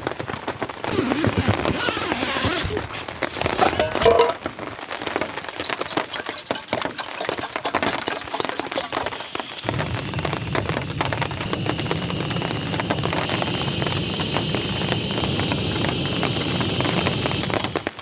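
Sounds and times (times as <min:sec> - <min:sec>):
rain: 0:04.4 - 0:18.0
high whining tones: 0:09.4 - 0:18.0.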